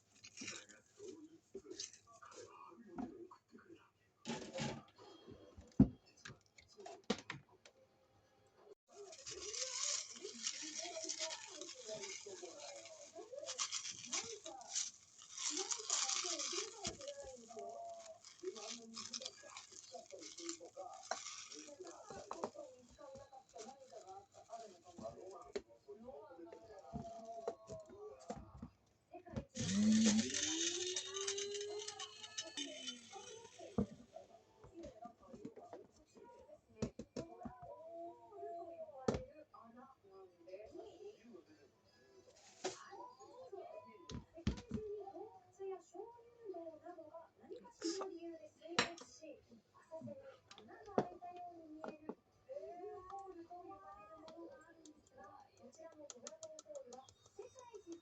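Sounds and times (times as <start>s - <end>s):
dry rustling hiss: 9.0s - 22.6s, 29.6s - 33.8s.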